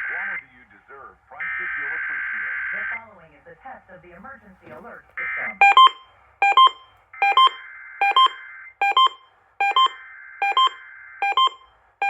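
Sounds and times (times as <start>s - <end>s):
loud double beep: 5.6s - 11.7s.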